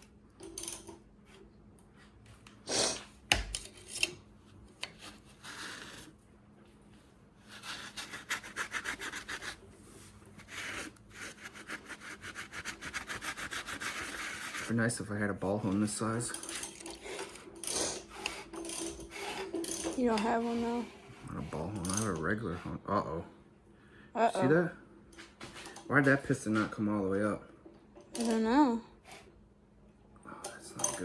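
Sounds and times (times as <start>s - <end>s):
hand sanding metal: 7.5s - 16.3s, 19.1s - 22.9s.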